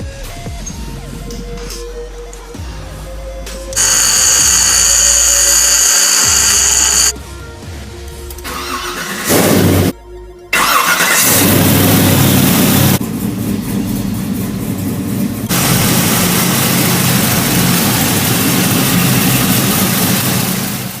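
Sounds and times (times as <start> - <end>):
car engine humming: 3.8 - 7.1, 11.5 - 13.6.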